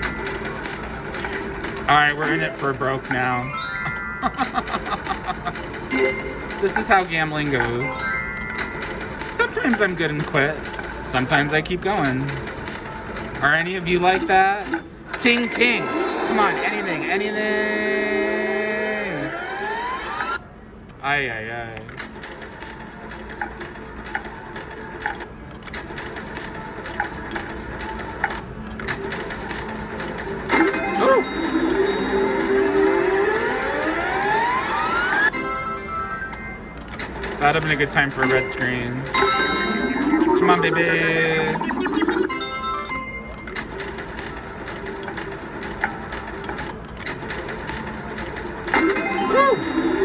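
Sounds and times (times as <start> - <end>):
casino background noise: 0.0 - 50.0
slot machine spinning clicks: 0.0 - 50.0
steady background hum: 0.0 - 50.0
short electronic chimes: 2.2 - 4.7, 7.8 - 9.0, 38.2 - 43.6, 48.8 - 50.0.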